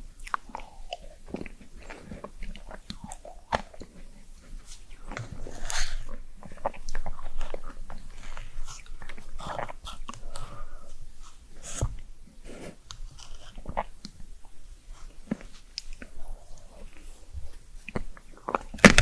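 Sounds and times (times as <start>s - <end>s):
biting and crunchy chewing: 0.0s - 19.0s
wet mouth clicks: 0.1s - 11.9s, 15.3s - 17.1s.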